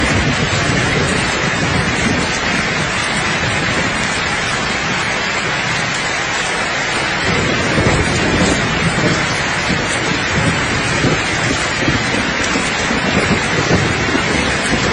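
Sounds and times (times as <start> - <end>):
low thunder rumble: 0.0 - 14.9
steady rain falling: 0.0 - 14.9.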